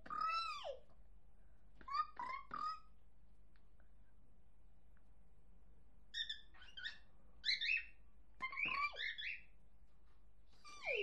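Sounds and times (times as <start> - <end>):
cockatiel whistling and chirping: 6.2 - 9.5.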